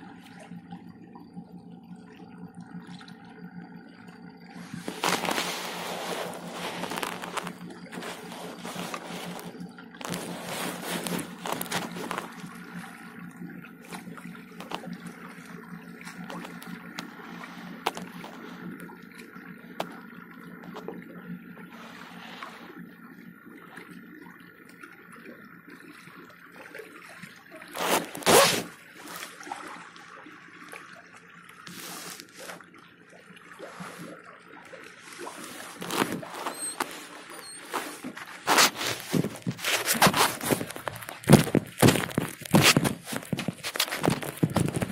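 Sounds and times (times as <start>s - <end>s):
steady low hum: 0.0s - 30.1s
water sloshing against boat hull: 0.0s - 44.9s.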